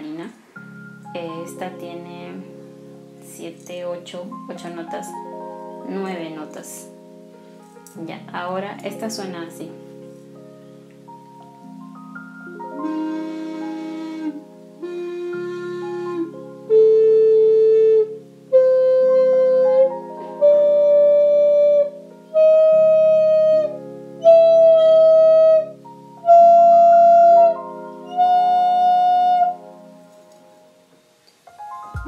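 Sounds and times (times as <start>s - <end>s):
ocarina playing ascending scale: 11.1s - 30.5s, 31.5s - 32.0s.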